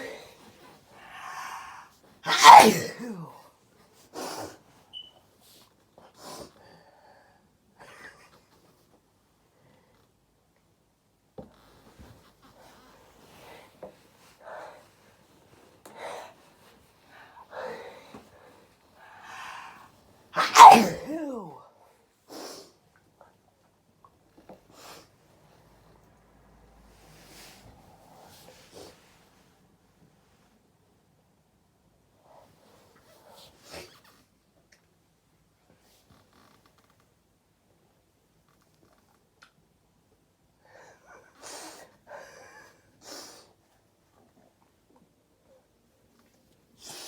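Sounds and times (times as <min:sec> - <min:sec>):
voice trailing off after sneeze: 0:01.2 - 0:03.4, 0:20.4 - 0:21.7.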